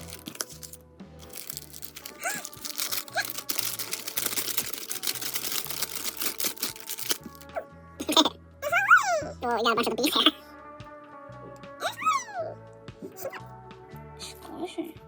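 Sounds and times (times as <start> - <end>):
plastic packaging crinkling: 0.0 - 7.5
background music: 0.0 - 15.0.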